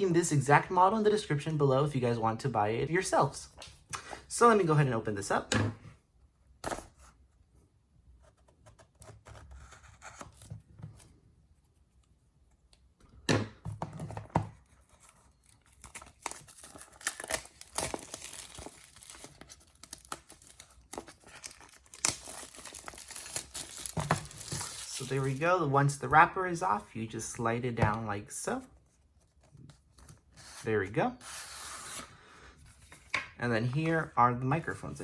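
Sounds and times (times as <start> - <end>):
plastic wrapper crinkling: 15.5 - 25.4
plastic wrapper tearing: 15.5 - 25.4.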